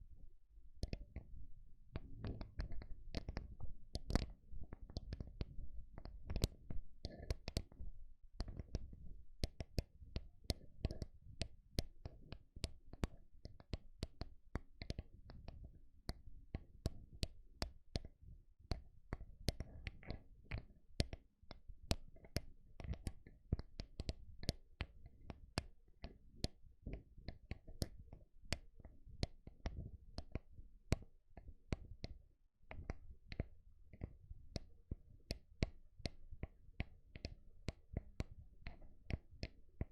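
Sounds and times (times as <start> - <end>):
fingertips tapping on microphone: 1.9 - 15.6.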